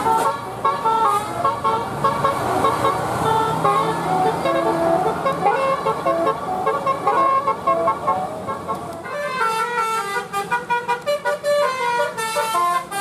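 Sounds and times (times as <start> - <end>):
multi-tone bus air horn tune: 0.0 - 13.0.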